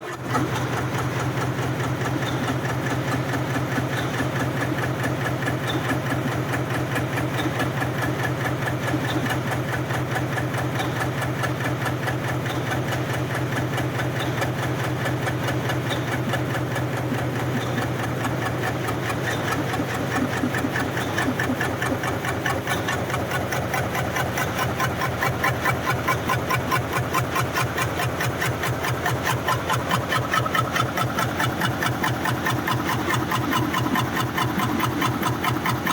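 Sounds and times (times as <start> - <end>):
press stamping rhythm: 13.6 - 35.9
steady low hum: 15.2 - 35.9.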